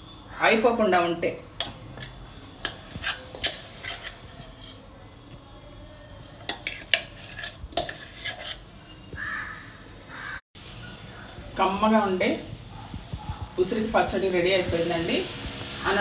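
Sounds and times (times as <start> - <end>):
metal spoon clinking dishes: 1.6 - 4.8, 6.2 - 8.9
spoon scraping steel vessel: 2.0 - 4.8, 5.9 - 9.1.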